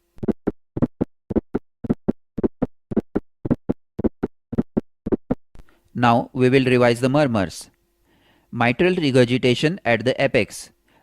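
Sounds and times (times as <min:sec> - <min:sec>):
galloping heartbeat thuds: 0:00.2 - 0:05.4.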